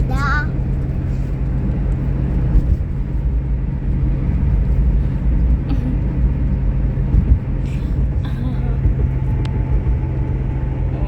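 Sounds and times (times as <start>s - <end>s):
road traffic rumble: 0.0s - 11.0s
vehicle engine drone: 0.0s - 11.0s.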